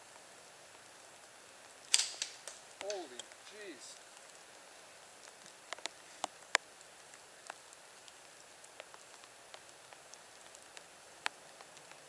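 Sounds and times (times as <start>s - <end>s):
sharp hard clicks: 1.9s - 3.4s
light ticks: 5.2s - 12.0s.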